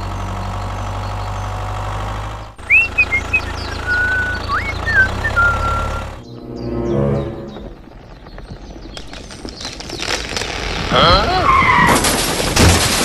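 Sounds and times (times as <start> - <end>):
engine idling: 0.0 - 6.2
high whistle-like chirps: 2.7 - 6.7.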